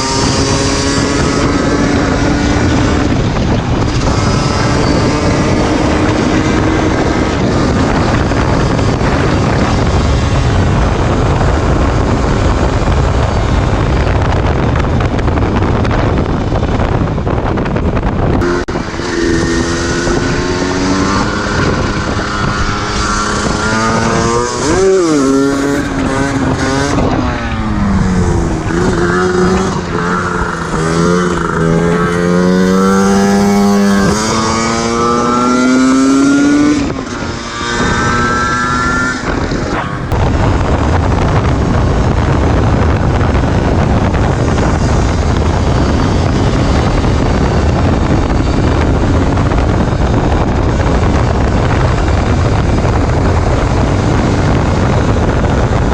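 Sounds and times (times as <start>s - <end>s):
two-stroke motorcycle engine revving: 0.0s - 16.4s, 18.0s - 55.9s
steady rushing noise: 0.0s - 55.9s.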